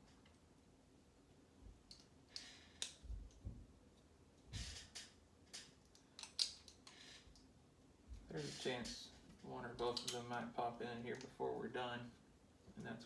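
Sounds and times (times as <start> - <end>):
plastic bricks clicking: 5.6 - 7.0.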